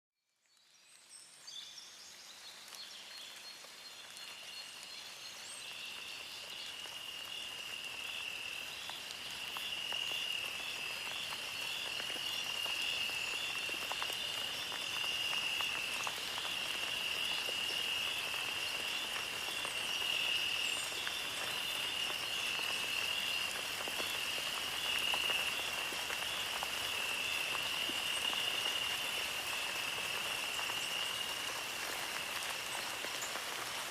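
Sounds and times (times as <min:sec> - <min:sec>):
chorus of calling night animals: 0:06.9 - 0:33.2.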